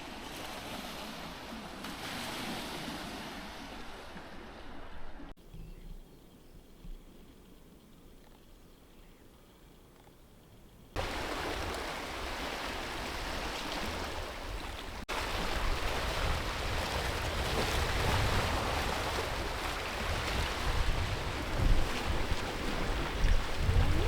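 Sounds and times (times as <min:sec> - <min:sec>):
waves washing on shore: 0:00.0 - 0:05.2, 0:11.0 - 0:24.0
wind buffeting microphone: 0:11.0 - 0:24.0.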